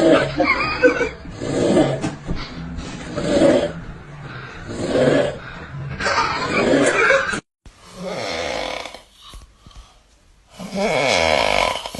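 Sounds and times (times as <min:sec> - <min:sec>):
loud rasping snores: 0:01.3 - 0:02.0, 0:03.0 - 0:03.8, 0:04.6 - 0:05.4, 0:06.4 - 0:07.1, 0:07.9 - 0:09.1, 0:10.6 - 0:11.9.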